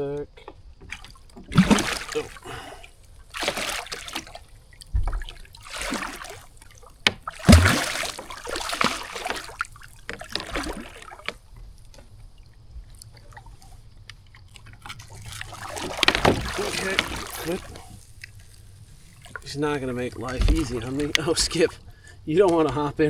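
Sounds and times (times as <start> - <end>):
water trickling: 0.0 - 23.0
fish thrashing and splashing water: 0.6 - 22.9
heavy thump: 7.5 - 8.2.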